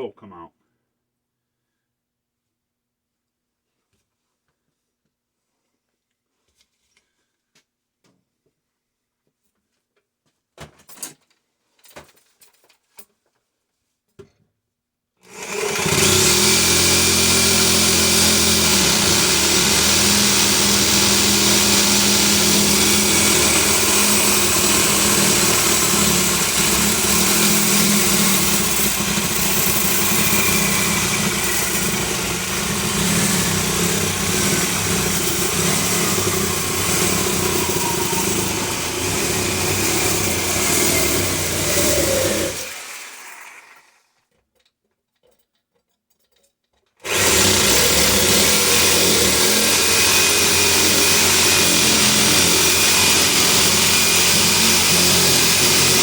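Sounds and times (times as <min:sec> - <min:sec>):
power cutting tool cutting steel: 0:15.4 - 0:43.9, 0:47.0 - 0:56.0.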